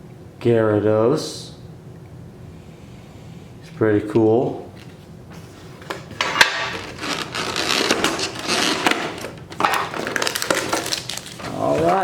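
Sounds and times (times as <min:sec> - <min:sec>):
packaging rustling and crinkling: 0:04.8 - 0:12.0.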